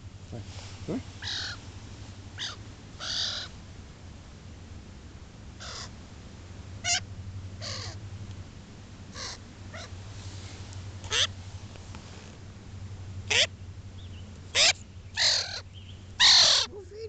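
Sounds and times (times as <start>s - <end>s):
steady low hum: 0.0s - 17.0s
bird giving harsh calls: 0.9s - 1.6s, 2.4s - 3.5s, 11.1s - 11.4s, 13.3s - 13.5s, 14.5s - 16.8s.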